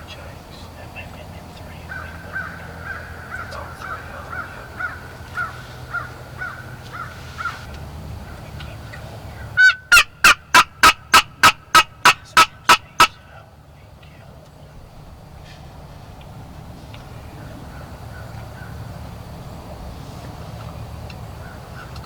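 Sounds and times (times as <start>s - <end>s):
wild turkey yelping: 1.9s - 7.7s, 9.6s - 13.3s.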